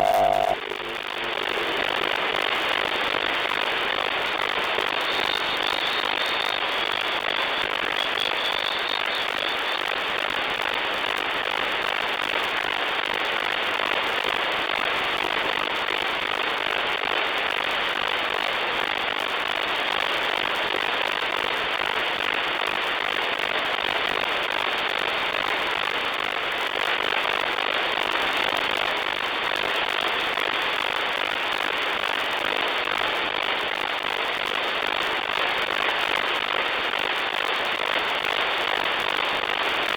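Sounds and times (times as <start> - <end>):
faint thin whistle: 0.0 - 0.6, 5.1 - 9.8
radio static hiss with crackle: 0.0 - 39.9.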